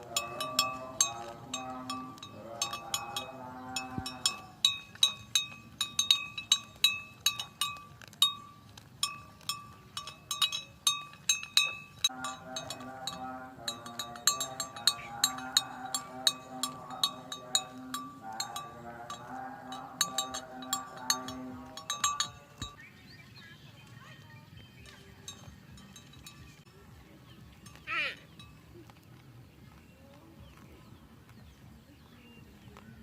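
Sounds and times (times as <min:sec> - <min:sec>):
cowbells clinking: 0:00.0 - 0:23.0, 0:23.9 - 0:29.8.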